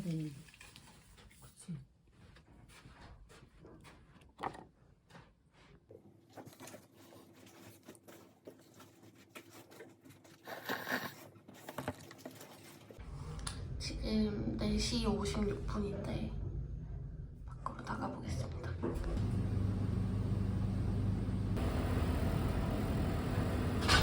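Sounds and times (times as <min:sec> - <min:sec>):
faint steady hum: 0:19.0 - 0:24.0.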